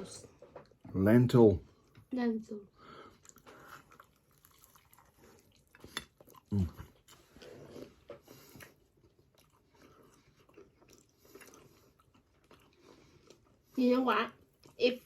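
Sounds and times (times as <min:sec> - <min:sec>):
chewing crisp food: 0:03.1 - 0:15.0.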